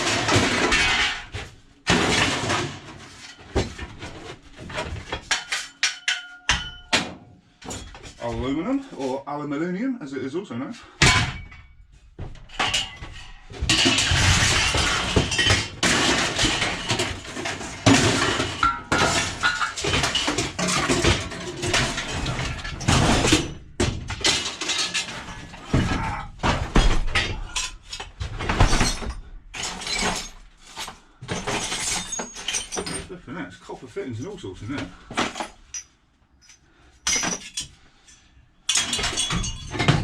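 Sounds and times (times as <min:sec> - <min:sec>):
scrap metal clattering: 0:00.0 - 0:06.9, 0:10.8 - 0:33.1.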